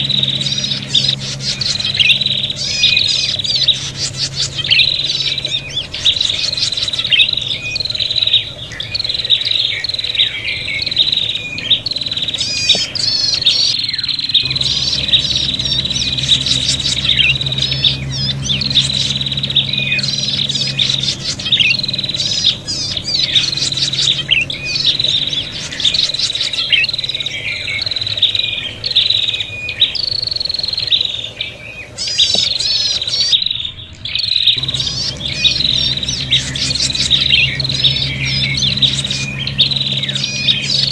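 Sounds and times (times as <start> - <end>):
birds chirping and trilling: 0.0 - 40.9
low hum: 0.0 - 40.9.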